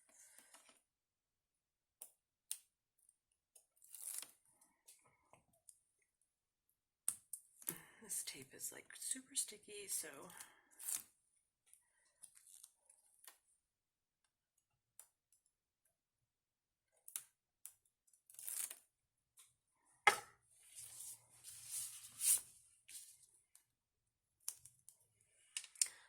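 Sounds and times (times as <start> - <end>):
sharp tap: 20.1 - 20.3
paper rustling: 20.1 - 23.2.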